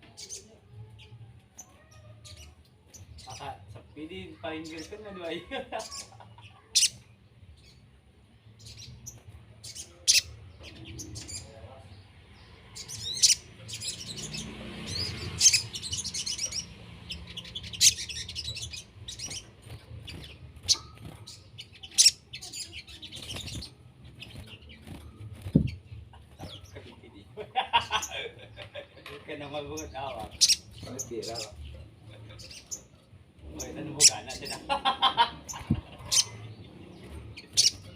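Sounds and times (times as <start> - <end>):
songbirds chirping: 0.0 - 37.9
rapid bird chattering: 12.8 - 27.0, 29.5 - 37.9.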